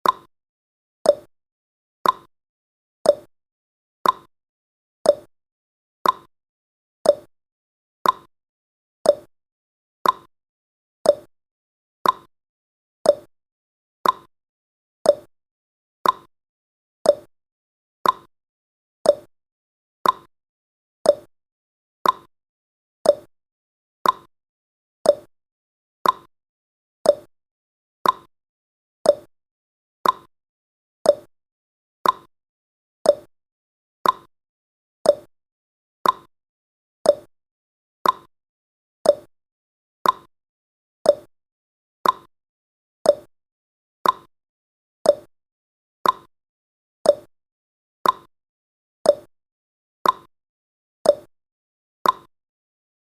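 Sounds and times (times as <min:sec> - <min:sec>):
timer ticking clicks: 0:00.0 - 0:00.3, 0:01.0 - 0:01.3, 0:02.0 - 0:02.3, 0:03.0 - 0:03.3, 0:04.0 - 0:04.3, 0:05.0 - 0:05.3, 0:06.0 - 0:06.3, 0:07.0 - 0:07.3, 0:08.0 - 0:08.3, 0:09.0 - 0:09.3, 0:10.0 - 0:10.3, 0:11.0 - 0:11.3, 0:12.0 - 0:12.3, 0:13.0 - 0:13.3, 0:14.0 - 0:14.3, 0:15.0 - 0:15.3, 0:16.0 - 0:16.3, 0:17.0 - 0:17.3, 0:18.0 - 0:18.3, 0:19.0 - 0:19.3, 0:20.0 - 0:20.3, 0:21.0 - 0:21.3, 0:22.0 - 0:22.3, 0:23.0 - 0:23.3, 0:24.0 - 0:24.3, 0:25.0 - 0:25.3, 0:26.0 - 0:26.3, 0:27.0 - 0:27.3, 0:28.0 - 0:28.3, 0:29.0 - 0:29.3, 0:30.0 - 0:30.3, 0:31.0 - 0:31.3, 0:32.0 - 0:32.3, 0:33.0 - 0:33.3, 0:34.0 - 0:34.3, 0:35.0 - 0:35.3, 0:36.0 - 0:36.3, 0:37.0 - 0:37.3, 0:38.0 - 0:38.3, 0:39.0 - 0:39.3, 0:40.0 - 0:40.3, 0:41.0 - 0:41.3, 0:42.0 - 0:42.3, 0:43.0 - 0:43.3, 0:44.0 - 0:44.3, 0:45.0 - 0:45.3, 0:46.0 - 0:46.3, 0:47.0 - 0:47.3, 0:48.0 - 0:48.3, 0:49.0 - 0:49.3, 0:50.0 - 0:50.3, 0:51.0 - 0:51.3, 0:52.0 - 0:52.3.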